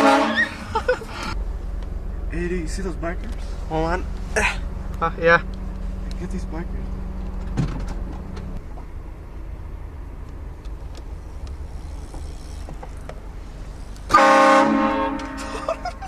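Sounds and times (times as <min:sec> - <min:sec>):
multi-tone air horn blast: 0:00.0 - 0:00.7, 0:14.1 - 0:15.9
low engine drone: 0:00.0 - 0:16.0
road noise: 0:00.0 - 0:16.0.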